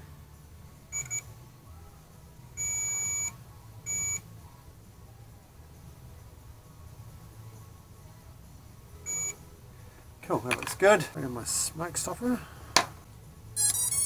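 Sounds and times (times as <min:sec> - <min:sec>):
continuity tester beeping: 0:09.1 - 0:09.4, 0:13.6 - 0:14.0.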